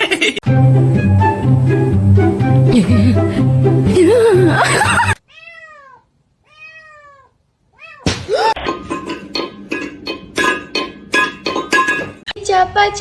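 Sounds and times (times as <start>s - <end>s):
cat meowing: 5.2s - 8.1s.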